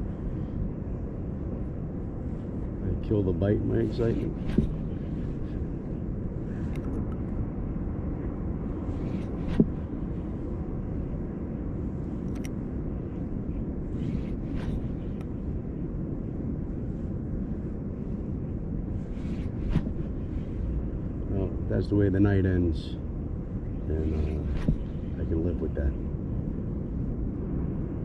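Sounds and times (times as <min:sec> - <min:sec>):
low outdoor rumble: 0:00.0 - 0:28.0.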